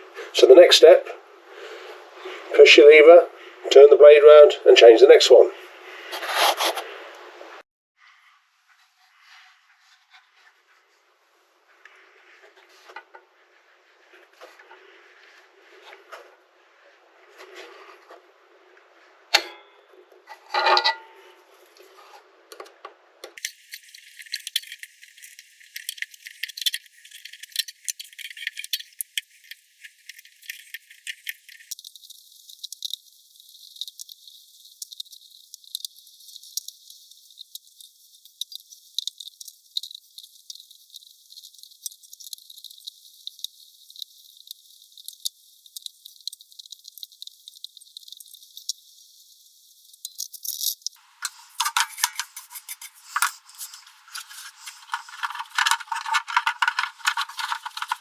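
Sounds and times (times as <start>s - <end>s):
metal parts clinking and rattling: 23.4s - 58.0s.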